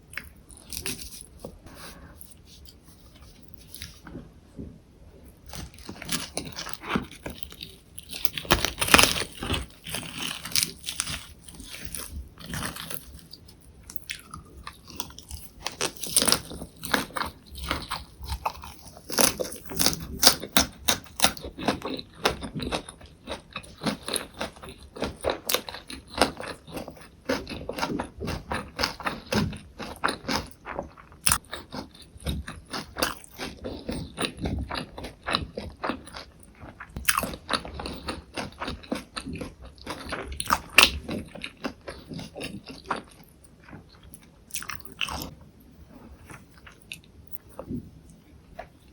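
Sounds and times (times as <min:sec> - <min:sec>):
chewing crunchy leaves: 0:00.1 - 0:04.1, 0:05.3 - 0:45.3.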